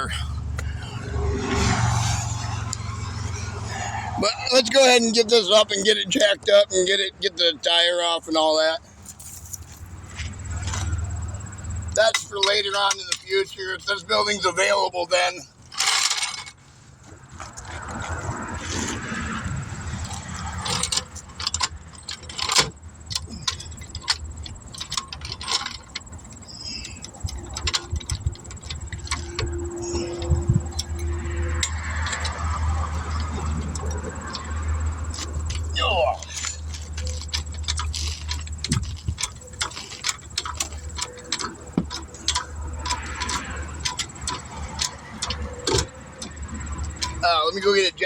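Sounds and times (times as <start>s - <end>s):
metallic clanks of tools: 9.0s - 16.6s, 19.9s - 47.9s
rapid mechanical clicking: 18.6s - 47.4s
low wind rumble: 22.8s - 47.2s
wind rumble on microphone: 27.2s - 31.4s.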